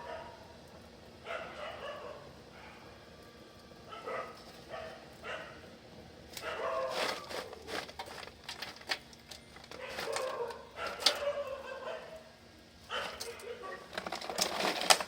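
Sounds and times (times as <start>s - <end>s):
dog barking and whining: 0.0s - 0.4s, 1.2s - 2.9s, 3.9s - 5.6s, 6.4s - 7.6s, 9.8s - 12.3s, 12.9s - 13.9s.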